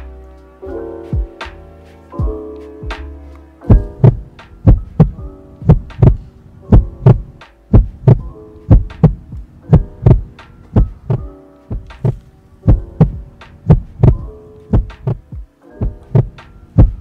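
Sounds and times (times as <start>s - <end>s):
heartbeat thumps: 1.2s - 1.4s, 2.2s - 3.0s, 3.7s - 17.0s
faint steady hum: 3.2s - 17.0s.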